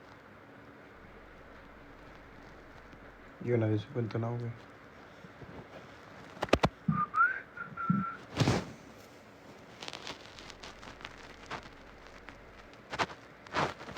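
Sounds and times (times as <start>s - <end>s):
short rustling: 0.0s - 6.9s, 8.2s - 13.9s
stomach growling whine: 0.0s - 8.5s, 9.6s - 13.9s
low gurgles: 0.8s - 4.6s.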